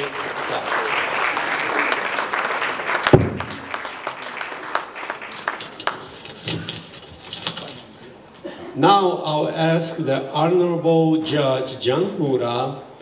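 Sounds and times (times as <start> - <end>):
audience applauding: 0.0 - 6.3
sharp thump: 3.1 - 3.8.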